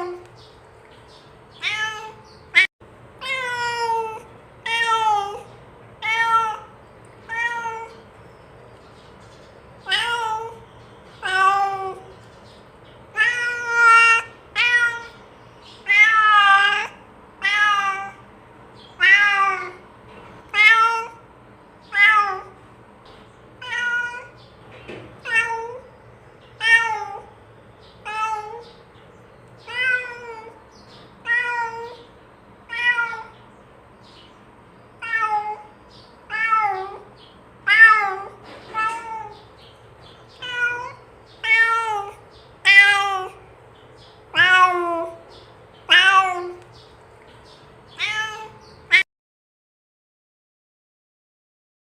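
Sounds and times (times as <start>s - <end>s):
cat meowing: 1.5s - 8.0s, 9.8s - 10.6s, 11.2s - 12.1s, 13.1s - 15.2s, 15.8s - 18.2s, 18.9s - 19.8s, 20.5s - 21.2s, 21.8s - 22.6s, 23.6s - 24.4s, 25.2s - 25.9s, 26.6s - 27.4s, 28.0s - 28.8s, 29.6s - 30.6s, 31.2s - 32.1s, 32.7s - 33.4s, 35.0s - 39.6s, 40.3s - 43.5s, 44.3s - 46.7s, 47.9s - 49.0s.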